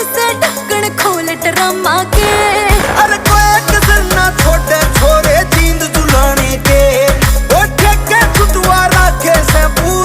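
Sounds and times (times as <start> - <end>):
music with heavy bass beat: 2.2 - 10.0.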